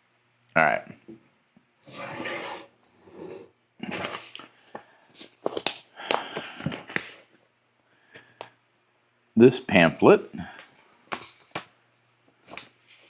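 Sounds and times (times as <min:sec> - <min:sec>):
packaging rustling: 0:03.9 - 0:07.4.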